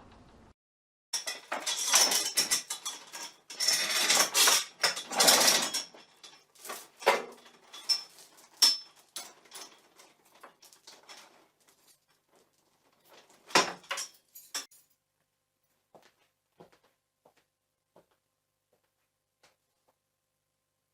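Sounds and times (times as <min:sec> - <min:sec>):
metal gate clanking and rattling: 0:01.2 - 0:11.4, 0:13.1 - 0:14.7.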